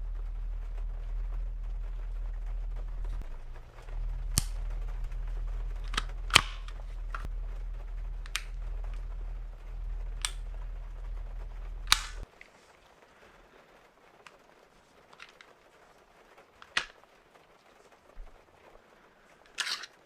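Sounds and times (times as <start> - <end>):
steady low hum: 0.0 - 16.9
airsoft pistol sharp cracks: 11.9 - 12.2.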